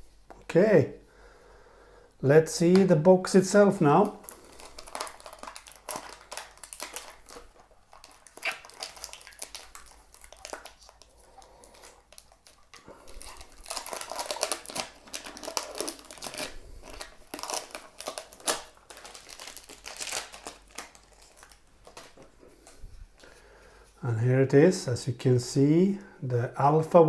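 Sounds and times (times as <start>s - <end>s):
packaging crinkling and rustling: 3.6s - 23.4s.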